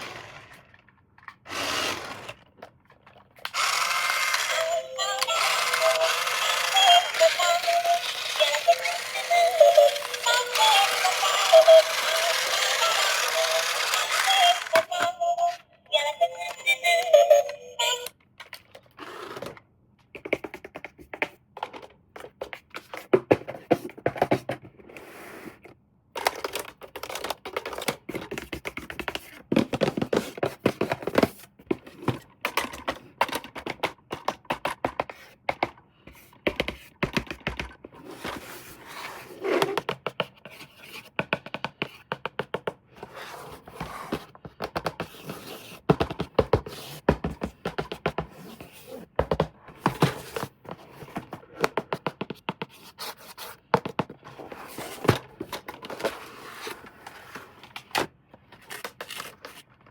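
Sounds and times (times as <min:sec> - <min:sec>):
packaging scratchy rustles: 0:03.6 - 0:15.0.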